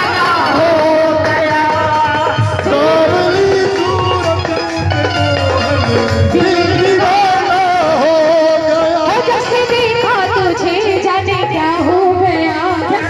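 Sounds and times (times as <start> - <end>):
hand drum beat: 0.0 - 13.0
wavering melody line: 2.7 - 8.2.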